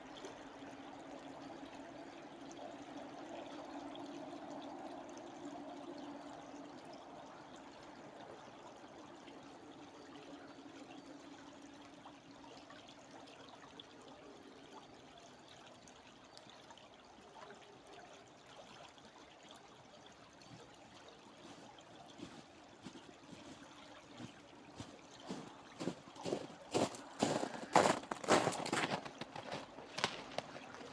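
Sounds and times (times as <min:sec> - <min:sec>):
stream trickling: 0:00.0 - 0:30.9
footsteps crunching: 0:21.4 - 0:30.9.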